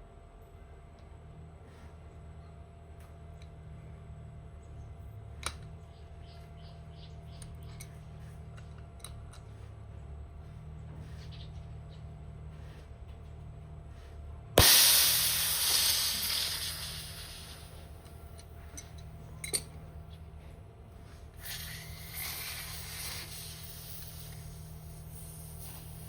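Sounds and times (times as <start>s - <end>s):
high-pressure air hissing: 14.6s - 18.4s, 21.4s - 26.0s.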